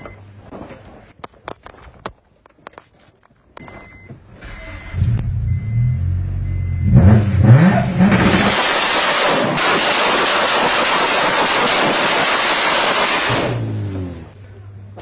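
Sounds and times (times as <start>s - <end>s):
exhaust bangs: 4.4s - 14.4s
car engine revving: 4.9s - 14.4s.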